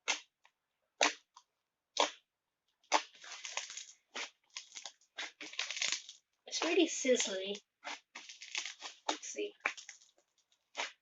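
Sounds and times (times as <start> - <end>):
slime crackling: 0.0 - 11.0
slime wet pops: 1.0 - 6.0
slime squeezed by hand: 1.9 - 6.7, 7.8 - 10.1, 10.7 - 11.0.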